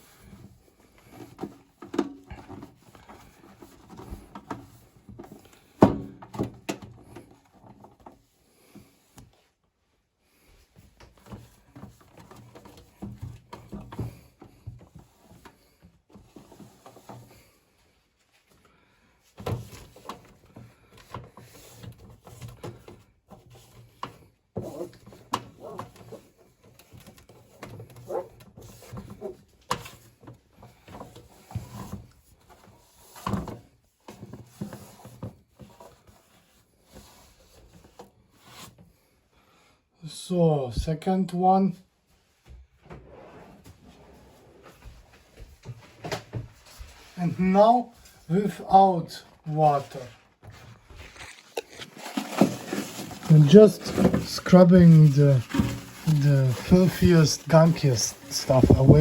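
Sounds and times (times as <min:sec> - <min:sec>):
wet tissue rubbing: 0:49.5 - 0:59.0.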